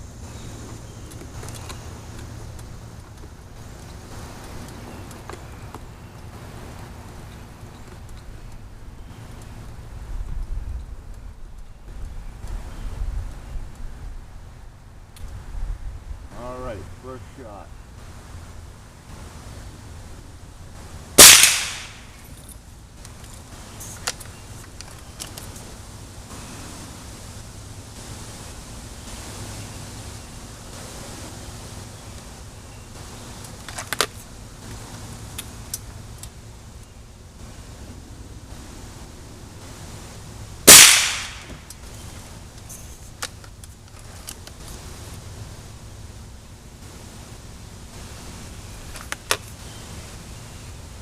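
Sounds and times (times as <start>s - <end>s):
air rifle shot: 21.2s - 22.2s, 40.7s - 41.7s.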